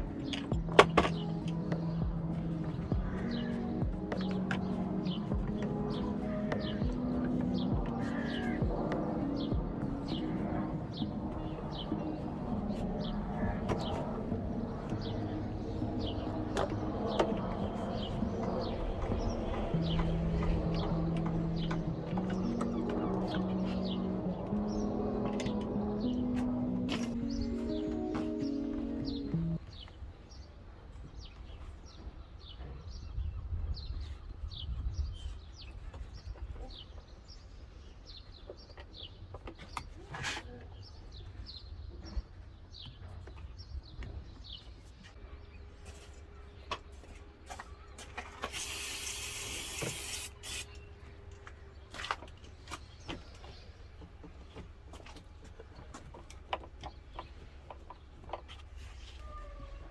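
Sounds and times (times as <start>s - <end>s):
steady low rumble: 0.0s - 29.6s
birds chirping: 0.0s - 59.9s
loud hiss: 48.5s - 50.8s.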